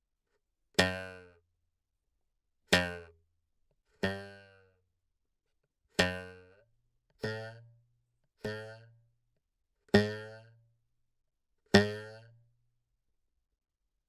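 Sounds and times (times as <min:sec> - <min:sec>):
taut wire twanging: 0:00.8 - 0:01.3, 0:02.7 - 0:03.1, 0:04.0 - 0:04.6, 0:05.9 - 0:06.6, 0:07.2 - 0:07.8, 0:08.4 - 0:09.0, 0:09.9 - 0:10.6, 0:11.7 - 0:12.4.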